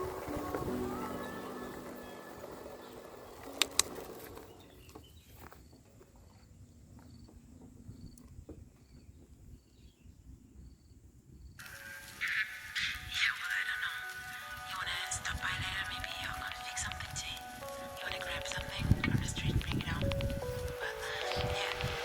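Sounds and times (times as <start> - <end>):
background music: 0.0 - 4.6, 11.6 - 22.0
sharp clicks: 3.4 - 4.0.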